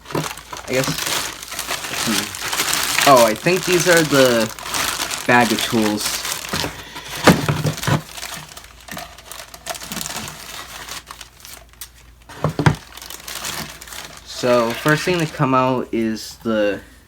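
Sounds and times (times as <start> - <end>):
plastic bag crinkling: 0.0 - 15.9.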